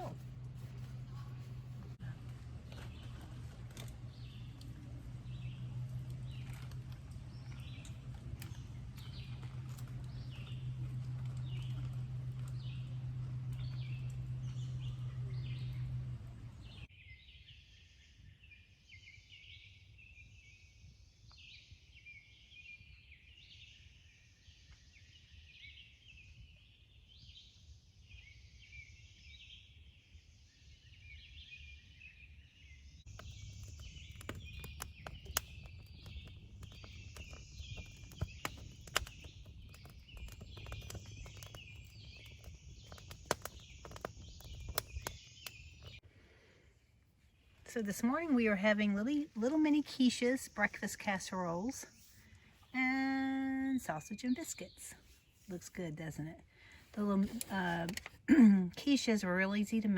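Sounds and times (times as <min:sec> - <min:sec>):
steady low hum: 0:00.0 - 0:16.9, 0:33.0 - 0:58.6
wild birds singing: 0:00.0 - 0:59.9.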